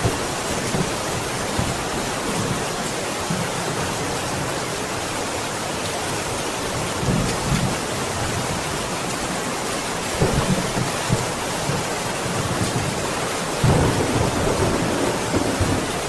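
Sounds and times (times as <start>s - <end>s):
heavy rain: 0.0s - 16.0s
thunder rumbling: 10.1s - 16.0s.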